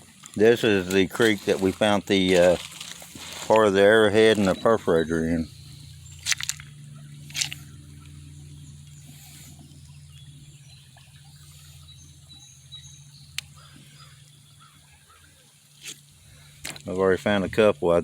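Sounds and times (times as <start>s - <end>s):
steady low hum: 0.0s - 18.0s
faint high bird chirps: 4.2s - 15.3s.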